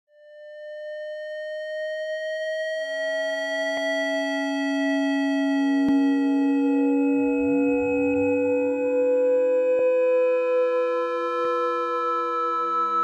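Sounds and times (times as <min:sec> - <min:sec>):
lower electronic tone: 0:05.1 - 0:13.0.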